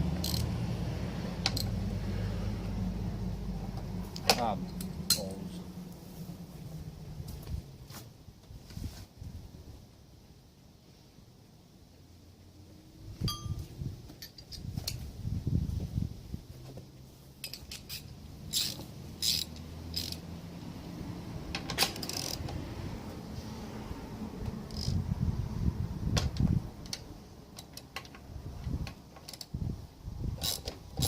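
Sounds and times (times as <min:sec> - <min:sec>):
metal tools clinking and scraping: 0:04.2 - 0:05.5.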